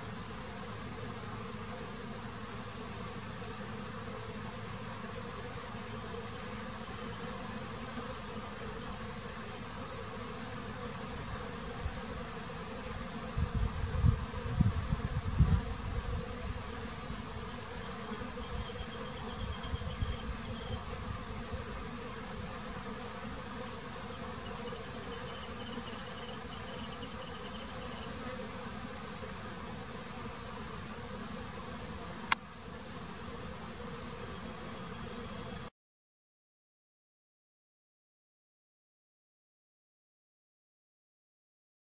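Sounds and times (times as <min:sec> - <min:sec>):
honeybees buzzing: 0:00.0 - 0:35.7
high insect trill: 0:17.4 - 0:21.1, 0:23.8 - 0:28.2.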